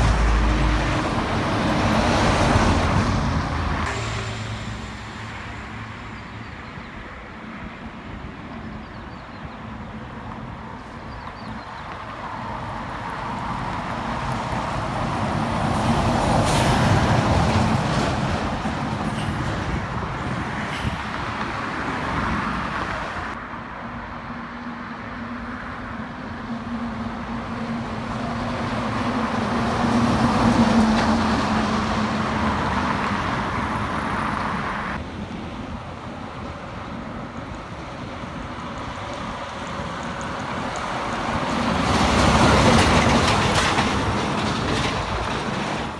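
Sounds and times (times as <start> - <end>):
steady engine drone: 0.0 - 6.6
heavy trucks driving past: 0.0 - 7.4, 12.3 - 23.4, 27.4 - 45.9.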